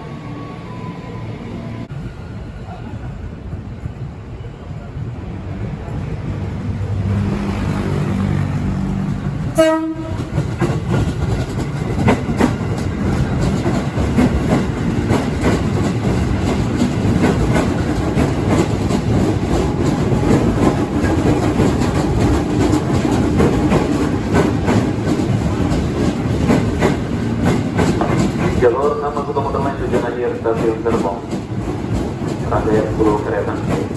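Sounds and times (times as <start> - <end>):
train wheels clattering on rails: 7.9 - 33.9
train horn blast: 9.5 - 10.4.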